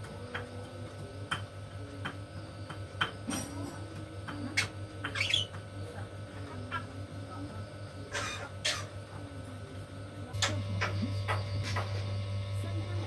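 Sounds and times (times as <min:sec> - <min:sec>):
low steady hum: 0:00.0 - 0:13.0
starling harsh calls and clicks: 0:04.5 - 0:05.7.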